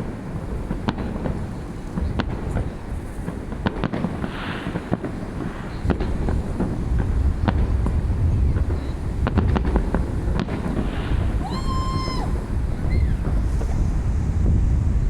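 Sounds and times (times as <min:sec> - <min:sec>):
fireworks bangs and cracks: 0:00.0 - 0:15.0
wind on microphone: 0:00.0 - 0:15.0
high held whistle: 0:11.4 - 0:13.2.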